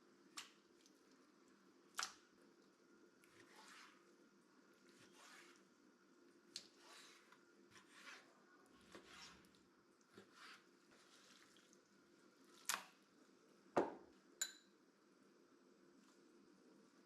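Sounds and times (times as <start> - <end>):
soft wet squishes: 0.2 - 13.6.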